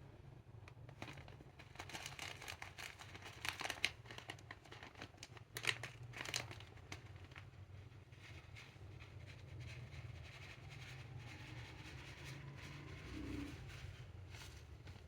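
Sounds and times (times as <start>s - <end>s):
faint low hum: 5.8s - 15.0s.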